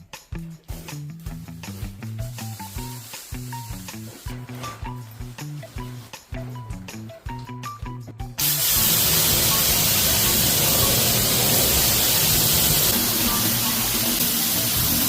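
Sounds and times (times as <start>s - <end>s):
background music: 0.0s - 15.0s
water sprayer hissing: 1.6s - 4.7s, 8.4s - 15.0s.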